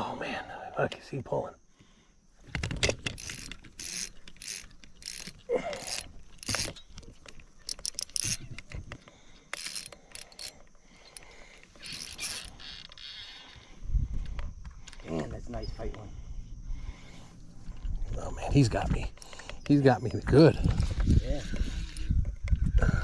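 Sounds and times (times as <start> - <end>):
fishing reel ratcheting: 2.5 - 8.8, 9.4 - 13.6.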